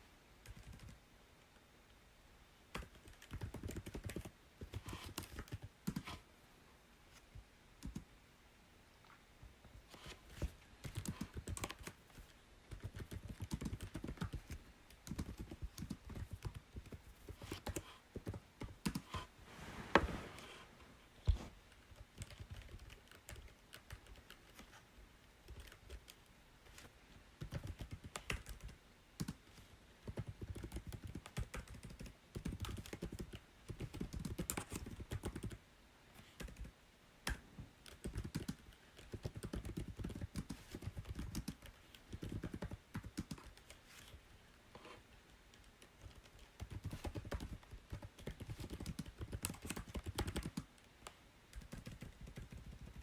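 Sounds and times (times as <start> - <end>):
computer keyboard typing: 0.4 - 1.0, 2.7 - 6.1, 7.8 - 8.1, 10.8 - 12.0, 12.7 - 19.1, 21.8 - 24.8, 25.5 - 26.8, 27.4 - 29.4, 30.0 - 35.6, 36.3 - 36.7, 37.3 - 43.8, 45.5 - 50.8, 51.5 - 53.0.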